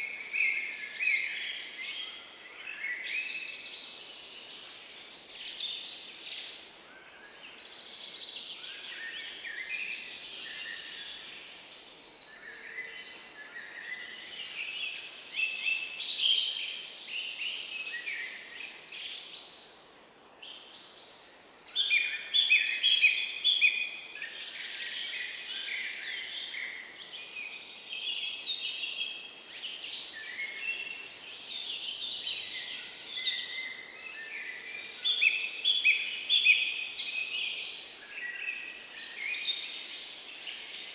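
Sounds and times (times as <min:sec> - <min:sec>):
small birds chirping and trilling: 0:24.3 - 0:40.9.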